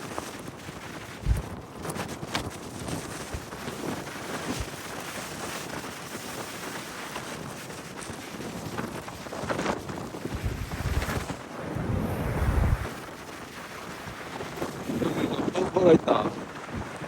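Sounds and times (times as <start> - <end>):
wind on microphone: 0.2 - 17.0
low buffeting thump: 1.3 - 1.5.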